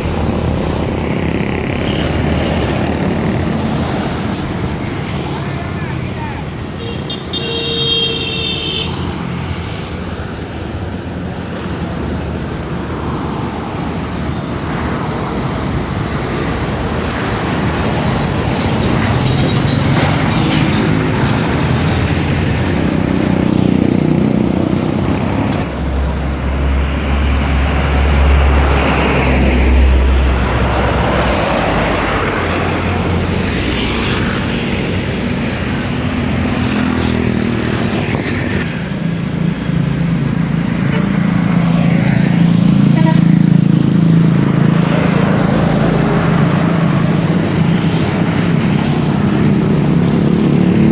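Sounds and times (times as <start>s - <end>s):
heavy road traffic passing: 0.0s - 50.9s.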